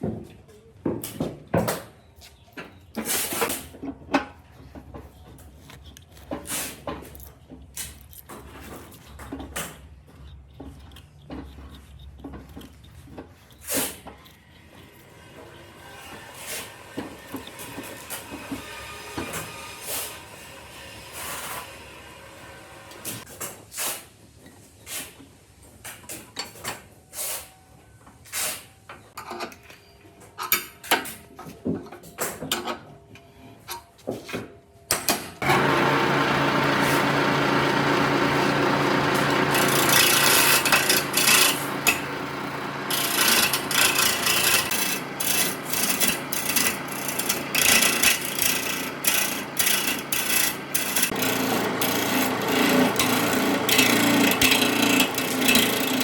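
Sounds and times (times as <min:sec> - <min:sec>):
tools knocking and scraping wood: 0:00.0 - 0:15.0, 0:16.0 - 0:19.6, 0:34.0 - 0:56.0
power tool abrading wood: 0:15.1 - 0:23.2, 0:35.4 - 0:56.0.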